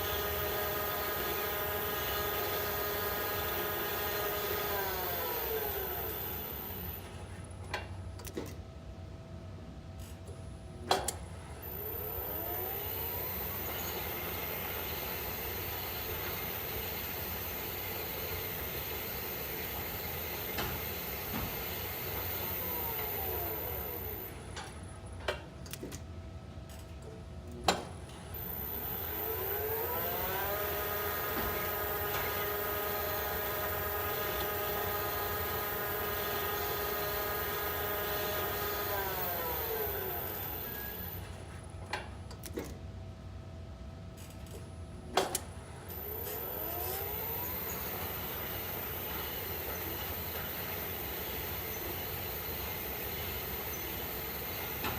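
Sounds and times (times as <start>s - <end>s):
lift machinery whining: 0.0s - 7.9s, 10.4s - 25.4s, 27.6s - 42.5s, 44.3s - 54.9s
sharp clicks of lift: 10.0s - 11.3s, 44.1s - 50.6s.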